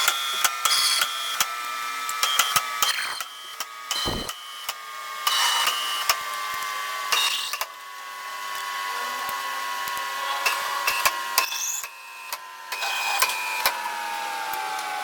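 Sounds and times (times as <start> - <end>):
bursts of mechanical noise: 4.0 - 4.4
machinery high whine: 4.1 - 4.3
sharp clicks: 4.1 - 4.3.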